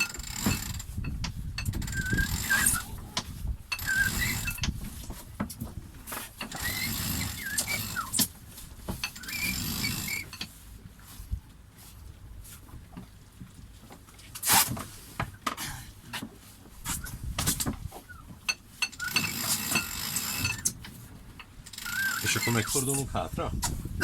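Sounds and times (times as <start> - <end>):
rigging squeaks: 0.0 - 4.8, 6.4 - 10.6, 16.8 - 23.8
wind gusting against microphone: 0.5 - 4.9, 22.3 - 24.0.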